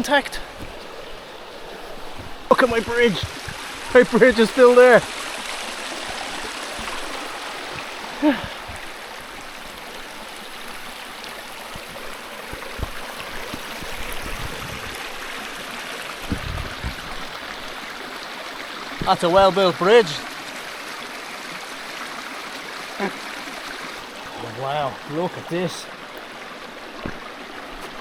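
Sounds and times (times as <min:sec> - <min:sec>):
river water flowing: 0:00.0 - 0:28.0
low thumps: 0:16.2 - 0:17.4.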